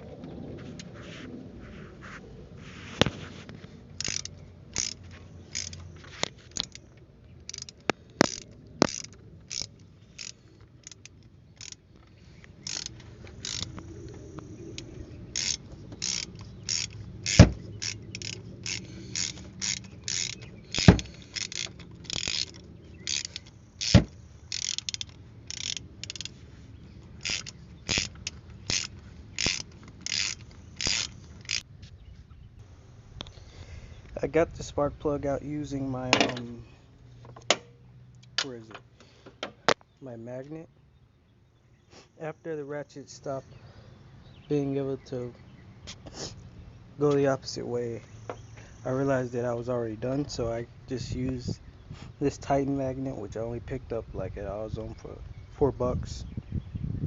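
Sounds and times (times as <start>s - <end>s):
ratchet wrench clicking: 4.0s - 11.8s, 12.6s - 13.8s, 14.8s - 26.4s, 27.2s - 31.6s
sharp knocks: 23.9s - 24.2s.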